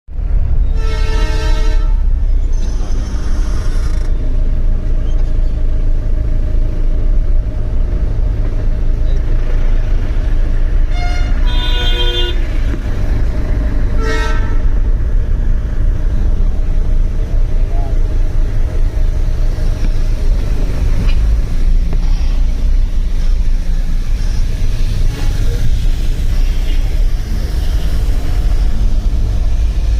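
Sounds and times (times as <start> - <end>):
machinery rumble: 0.1 - 29.9
train horn: 0.7 - 2.1, 10.9 - 12.4, 14.0 - 14.8.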